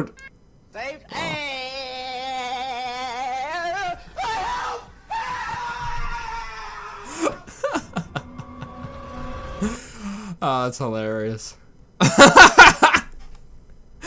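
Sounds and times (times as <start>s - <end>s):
high wailing voice: 1.1s - 9.7s.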